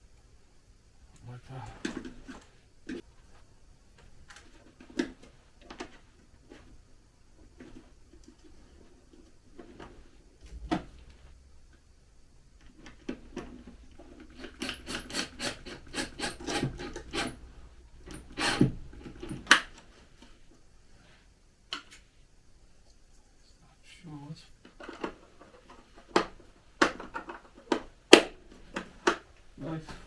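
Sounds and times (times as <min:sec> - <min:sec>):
rhythmic scraping on wood: 0:13.2 - 0:19.5.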